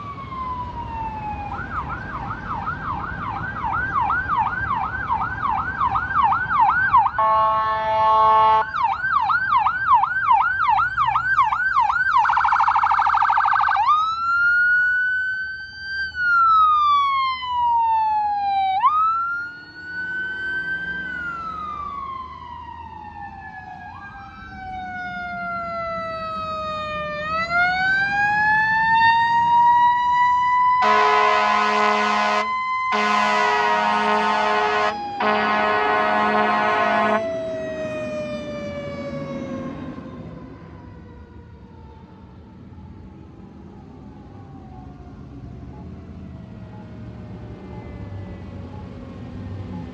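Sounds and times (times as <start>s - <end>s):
siren rapid warble: 0.0s - 42.1s
siren slow wail: 0.0s - 49.9s
siren yelp: 0.0s - 49.9s
horn blast: 7.2s - 8.7s, 30.8s - 37.2s.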